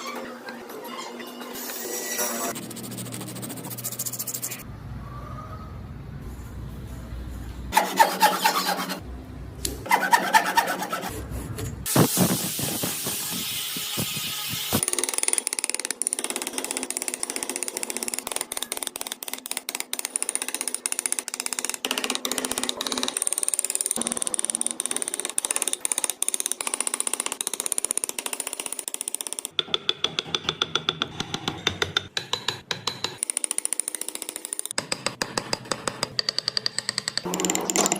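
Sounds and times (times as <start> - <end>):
scraping strokes on wood: 7.7 - 9.0, 9.8 - 11.3
hiss: 11.9 - 14.8.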